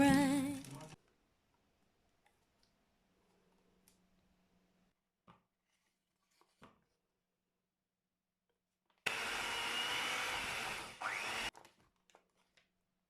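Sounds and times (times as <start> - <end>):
small electric motor whining: 9.1 - 11.5.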